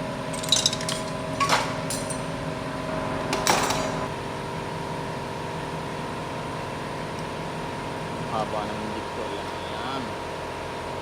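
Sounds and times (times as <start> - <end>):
steady background hum: 0.0 - 11.0
tools clinking on metal: 0.3 - 2.4, 3.3 - 4.1.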